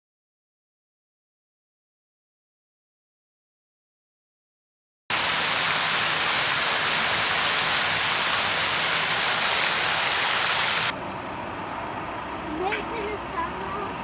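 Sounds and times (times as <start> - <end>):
steady hiss of noise: 5.1 - 14.0.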